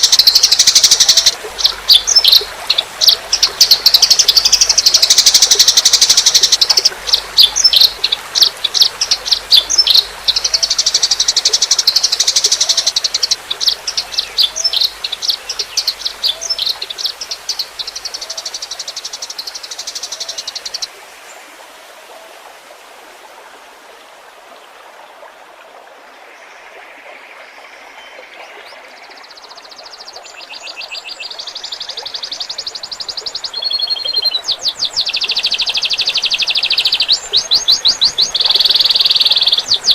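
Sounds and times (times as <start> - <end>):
songbird singing trills: 0.0 - 20.9, 30.1 - 39.9
faint water trickle: 0.0 - 39.9.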